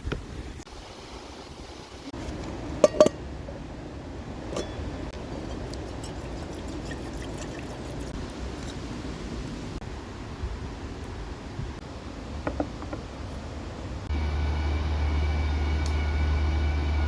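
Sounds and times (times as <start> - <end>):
cookware clinking: 2.8 - 3.2, 4.5 - 8.0.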